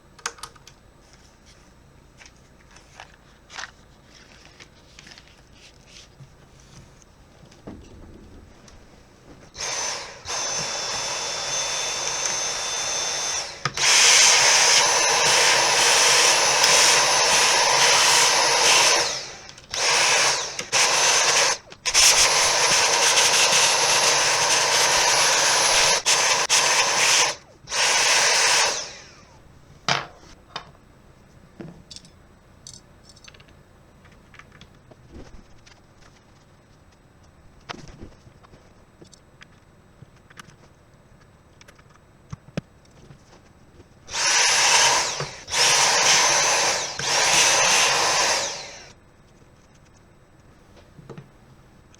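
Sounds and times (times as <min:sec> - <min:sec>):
small electric tool whining: 0:07.6 - 0:29.4, 0:44.1 - 0:49.0.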